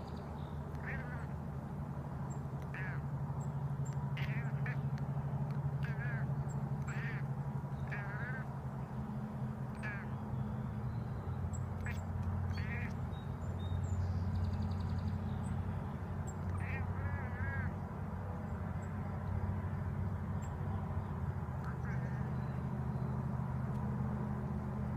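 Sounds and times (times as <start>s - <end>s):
steady low hum: 0.0s - 24.9s
cat chattering: 0.8s - 1.3s, 2.7s - 3.0s, 4.2s - 4.8s, 5.8s - 7.2s, 7.8s - 8.5s, 9.7s - 10.2s, 11.8s - 12.9s, 16.5s - 17.7s.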